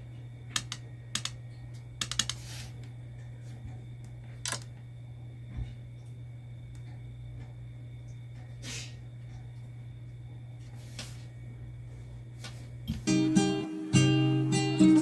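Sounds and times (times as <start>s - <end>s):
steady low hum: 0.0s - 14.8s
strummed acoustic guitar music: 13.0s - 15.0s.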